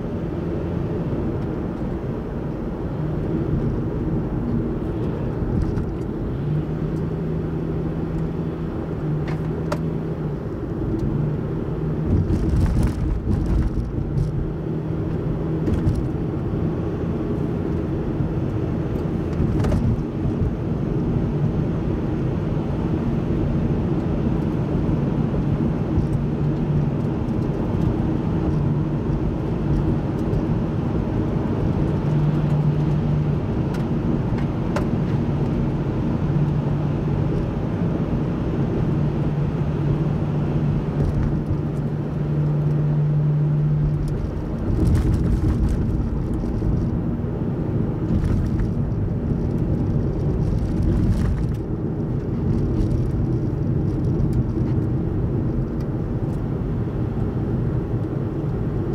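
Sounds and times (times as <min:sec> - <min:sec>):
car engine drone: 0:00.0 - 0:58.9
tyre rumble on road: 0:11.9 - 0:16.2, 0:43.6 - 0:55.7.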